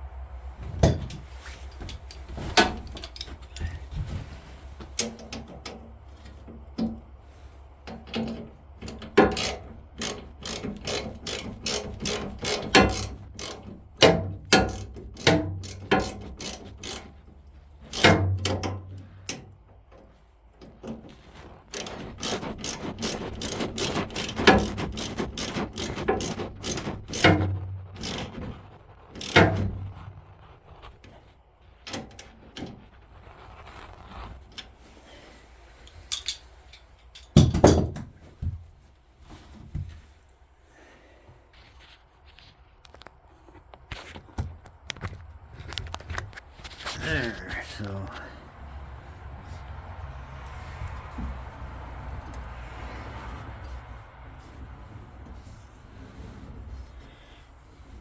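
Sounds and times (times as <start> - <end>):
ratchet wrench clicking on metal: 8.1 - 17.2, 17.8 - 19.4, 21.7 - 27.4, 28.0 - 28.5, 29.2 - 29.7.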